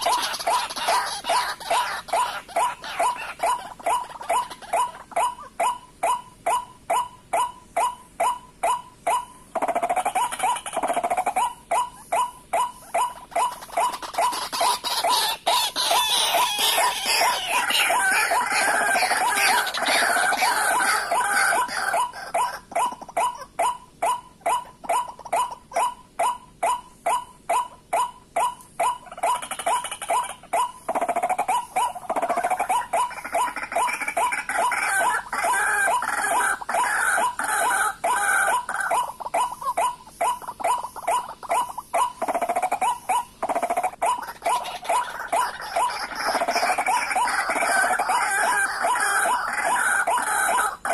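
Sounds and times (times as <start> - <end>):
waterhens calling: 0.0 - 5.6, 13.0 - 23.6, 29.1 - 50.9.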